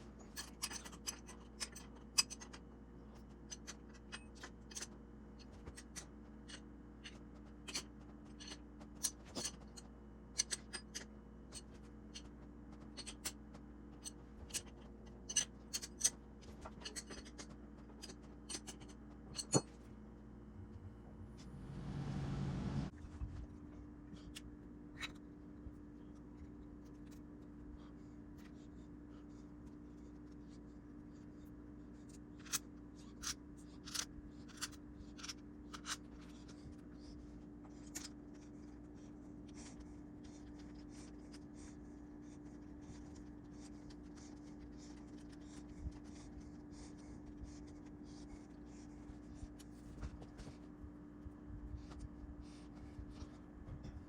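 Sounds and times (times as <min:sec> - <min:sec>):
steady low hum: 0:00.0 - 0:54.0.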